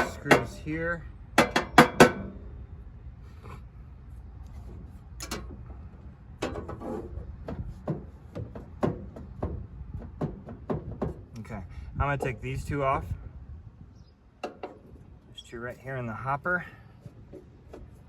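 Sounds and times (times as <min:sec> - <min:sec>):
hand tools clicking and scraping metal: 0:00.0 - 0:00.7
low steady rumble: 0:00.0 - 0:18.0.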